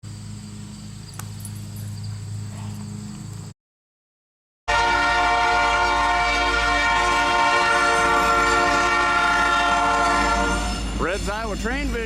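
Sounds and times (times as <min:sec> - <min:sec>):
locomotive air horn: 0:04.7 - 0:11.1.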